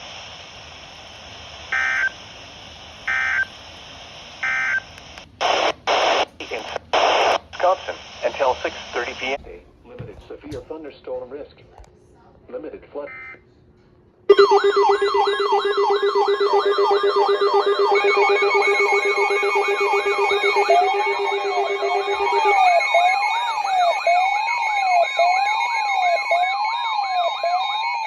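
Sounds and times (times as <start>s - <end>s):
falling siren yelp: 14.3s - 28.0s
pulsing low siren tone: 14.3s - 28.0s
rising and falling siren wail: 14.3s - 28.0s.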